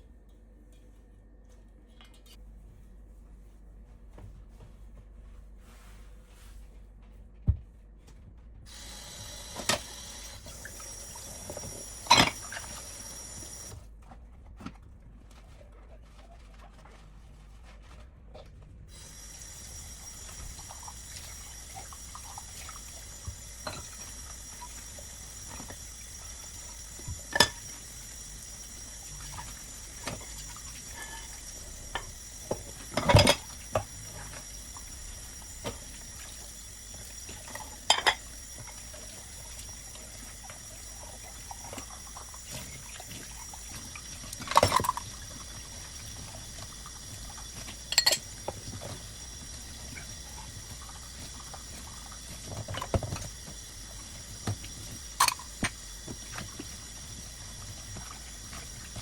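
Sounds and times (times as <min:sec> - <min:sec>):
tap water running into sink: 0:08.7 - 0:13.8, 0:18.9 - 0:59.0
dishes clinking: 0:12.0 - 0:12.8, 0:27.3 - 0:27.7, 0:32.8 - 0:33.9, 0:37.5 - 0:38.3, 0:47.5 - 0:48.6, 0:55.2 - 0:55.6.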